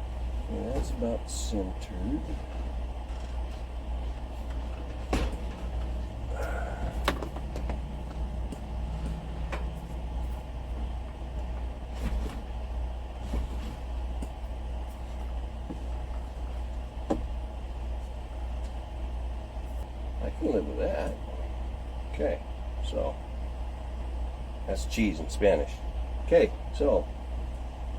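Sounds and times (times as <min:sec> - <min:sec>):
steady low hum: 0:00.0 - 0:27.9
knocks and clicks of shelf handling: 0:04.5 - 0:06.0, 0:06.9 - 0:07.8.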